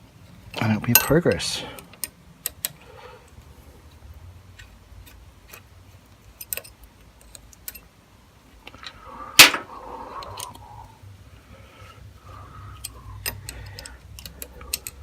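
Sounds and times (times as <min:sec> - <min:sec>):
metal tools clinking: 0:00.5 - 0:02.7, 0:06.3 - 0:07.9, 0:12.7 - 0:15.0.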